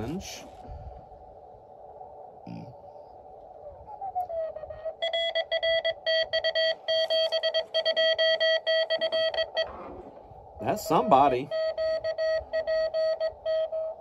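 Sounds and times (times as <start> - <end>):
morse code radio beeps: 5.0 - 9.8, 10.6 - 14.0
tone sliding down in pitch: 5.0 - 10.0, 10.6 - 14.0.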